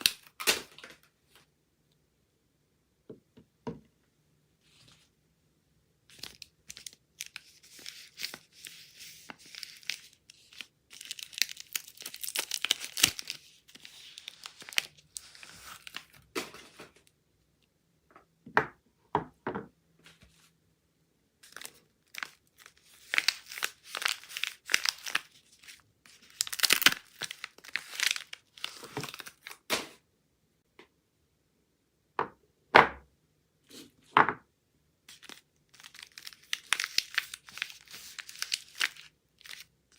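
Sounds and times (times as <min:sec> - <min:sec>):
wrapping crinkling and tearing: 0:06.1 - 0:16.8, 0:21.4 - 0:29.7, 0:35.1 - 0:39.9.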